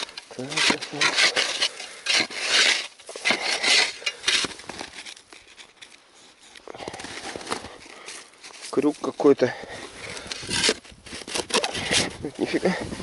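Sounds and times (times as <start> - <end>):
shovel digging into snow: 0.0 - 5.2, 10.1 - 12.6.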